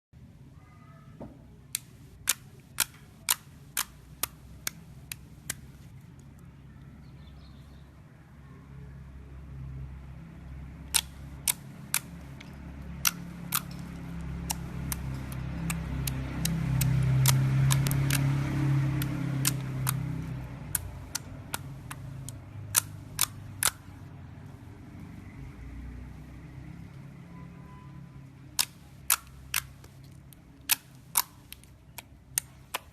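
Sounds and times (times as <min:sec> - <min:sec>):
slime popping and clicking: 0:01.8 - 0:05.7, 0:10.9 - 0:12.2, 0:13.0 - 0:18.3, 0:19.0 - 0:20.1, 0:20.7 - 0:23.8, 0:28.6 - 0:32.9.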